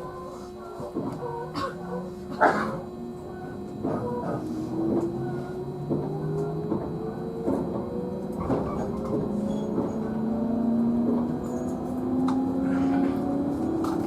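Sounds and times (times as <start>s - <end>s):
electric train motor whine: 0.0s - 14.0s.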